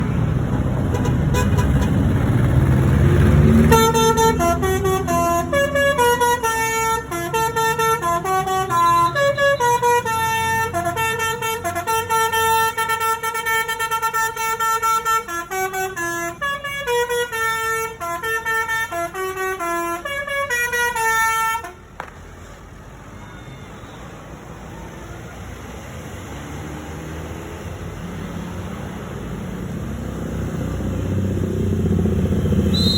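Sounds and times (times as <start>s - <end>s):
multi-tone air horn melody: 3.6s - 21.8s.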